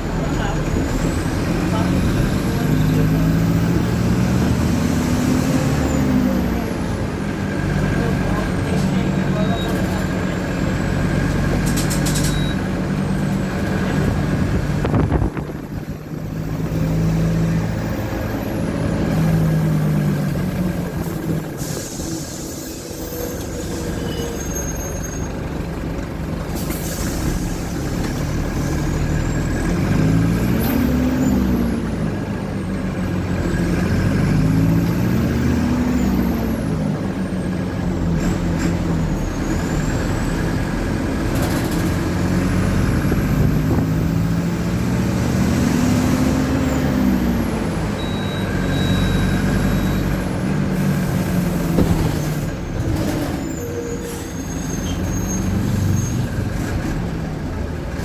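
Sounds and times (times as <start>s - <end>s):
bus diesel engine revving: 0.0s - 58.0s
air brake hisses: 21.4s - 24.7s, 26.6s - 27.8s.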